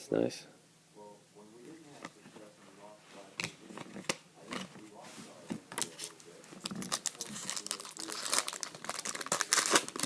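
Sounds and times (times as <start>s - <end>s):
plastic and paper crinkling: 3.2s - 10.0s.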